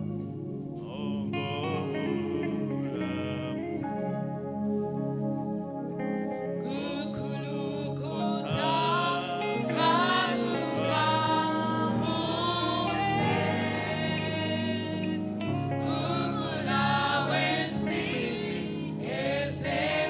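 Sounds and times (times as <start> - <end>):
instruments holding chords: 0.0 - 20.0
voices singing: 6.8 - 20.0.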